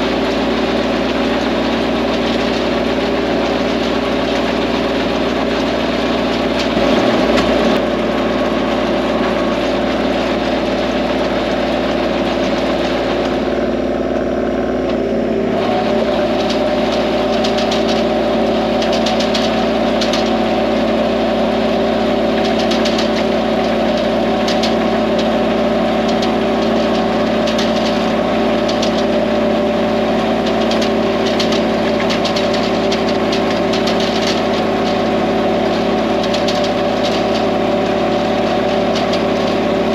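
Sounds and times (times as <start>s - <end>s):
tractor engine running: 0.0s - 39.9s
clicking and clatter: 15.8s - 39.9s.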